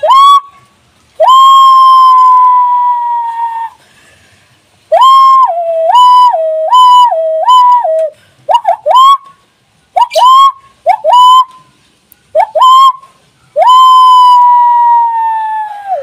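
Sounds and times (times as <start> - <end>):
hand whistle imitating siren: 1.2 - 3.7, 4.9 - 9.3, 10.0 - 11.6, 12.4 - 16.0.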